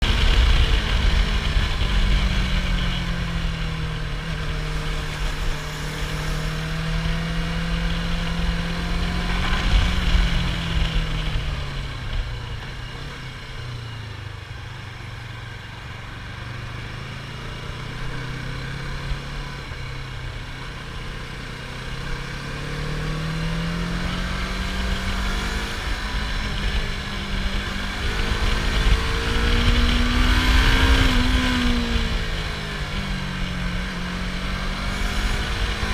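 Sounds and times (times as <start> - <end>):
motorcycle engine running: 0.0 - 35.9.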